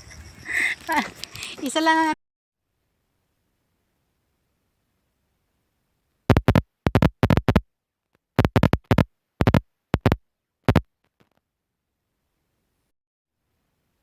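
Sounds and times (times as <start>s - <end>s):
scratching on phone microphone: 6.3s - 7.6s, 8.4s - 10.8s.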